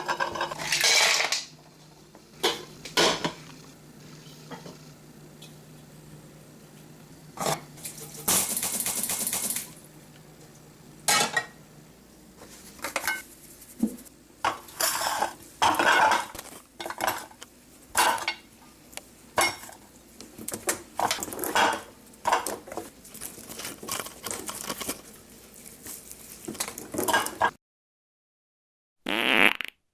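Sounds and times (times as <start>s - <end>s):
cutlery scraping against dishes: 12.8s - 13.2s, 14.6s - 17.3s.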